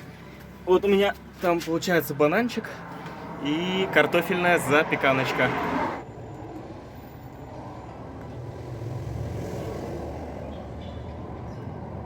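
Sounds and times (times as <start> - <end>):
vehicle passing: 2.4 - 12.0.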